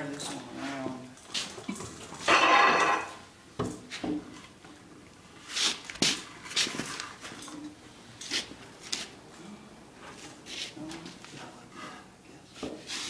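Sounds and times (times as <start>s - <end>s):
wood scraping on wood: 11.7s - 13.0s.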